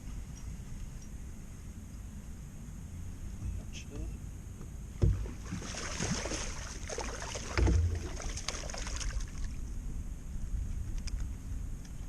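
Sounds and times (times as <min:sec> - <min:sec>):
water splashing around a boat: 0:04.9 - 0:09.8
low thump: 0:05.0 - 0:05.4, 0:07.5 - 0:08.0.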